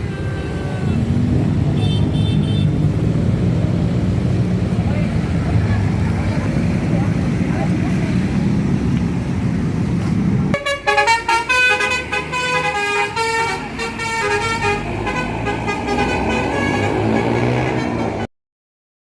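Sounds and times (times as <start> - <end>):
multi-tone bus horn tune: 0.0 - 2.8, 10.5 - 18.3
low vehicle rumble: 0.0 - 18.3.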